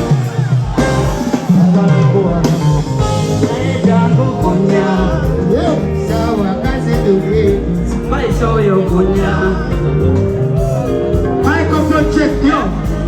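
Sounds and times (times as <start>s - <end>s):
backing track with bass line: 0.0s - 13.0s
man singing through pa: 1.4s - 13.0s.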